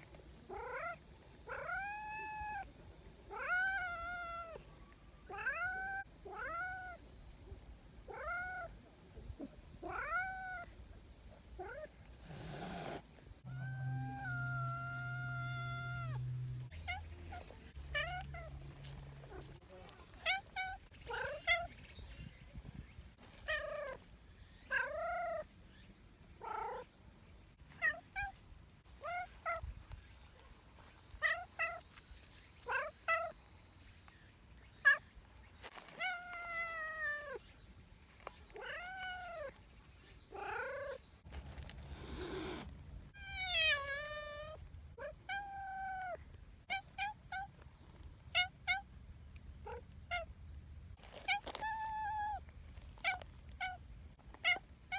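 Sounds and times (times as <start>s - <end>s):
cat meowing: 12.6s - 18.6s, 38.6s - 39.5s.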